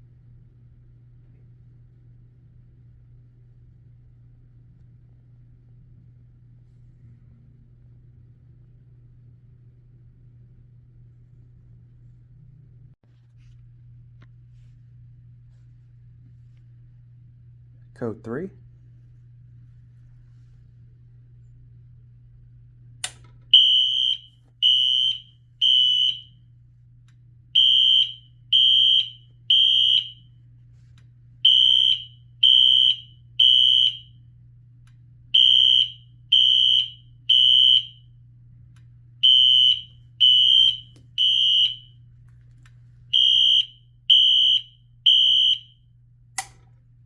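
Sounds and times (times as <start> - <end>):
fire alarm horn beeping: 23.5 - 26.4, 27.6 - 30.4, 31.4 - 34.3, 35.3 - 38.1, 39.2 - 42.0, 43.1 - 45.9
sharp click: 46.4 - 46.7.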